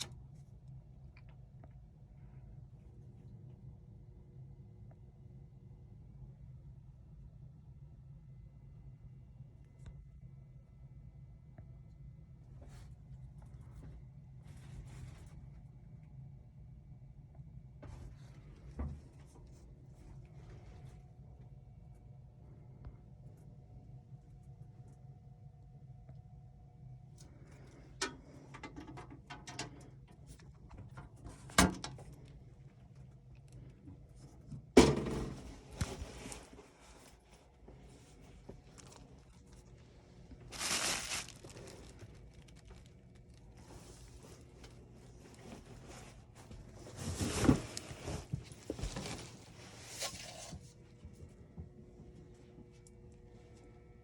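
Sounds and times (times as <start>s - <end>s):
low steady hum: 0.0s - 54.0s
rustling and scraping handling noise: 12.5s - 15.9s, 27.2s - 53.7s.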